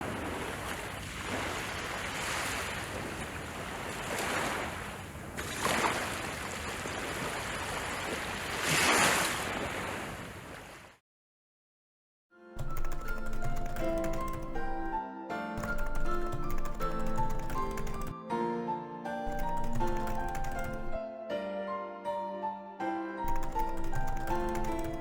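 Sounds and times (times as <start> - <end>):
ocean waves washing: 0.0 - 10.7.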